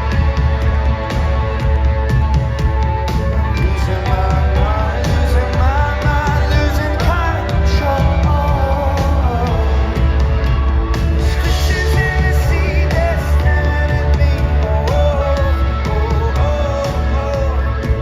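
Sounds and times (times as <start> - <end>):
lead singer singing: 0.0 - 18.0
live rock band playing: 0.0 - 18.0.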